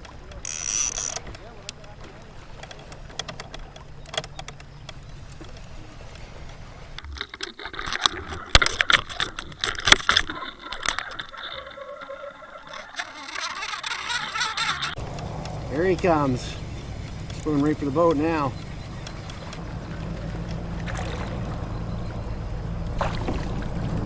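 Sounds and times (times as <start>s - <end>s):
fishing reel clicking: 0.3s - 1.3s, 7.4s - 19.6s.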